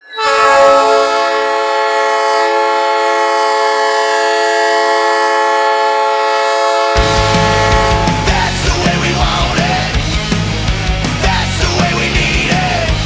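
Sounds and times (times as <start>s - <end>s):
goal horn long blast: 0.2s - 8.6s.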